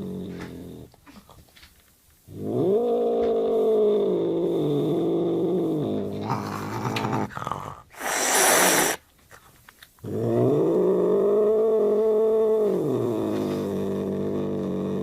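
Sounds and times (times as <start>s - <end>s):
cat growling yowl: 2.3s - 9.0s
cat hissing: 7.9s - 9.0s.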